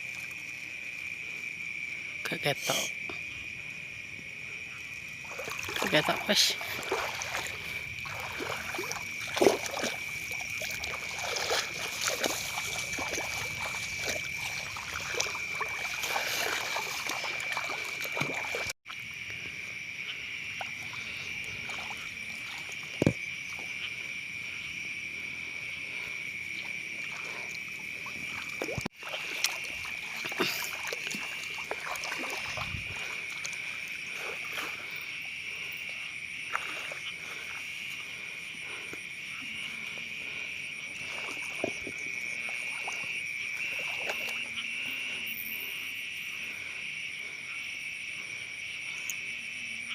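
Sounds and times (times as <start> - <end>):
night chorus of calling creatures: 1.3 - 49.9
shallow water splashing: 5.2 - 19.1, 20.5 - 24.0, 25.2 - 45.8.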